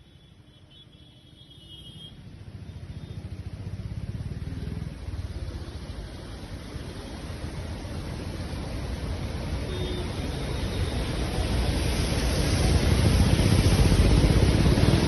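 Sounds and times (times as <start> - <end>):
road traffic rumble: 0.0 - 15.0
heavy rain hiss: 3.5 - 15.0.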